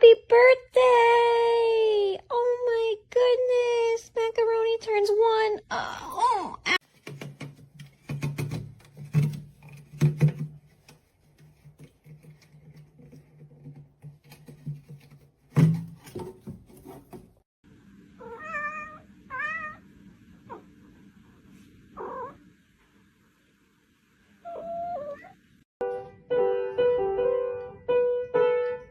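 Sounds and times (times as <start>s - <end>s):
scattered clicks and knocks: 6.8s - 17.4s
cat meowing: 18.2s - 19.8s, 22.0s - 22.4s, 24.5s - 25.4s.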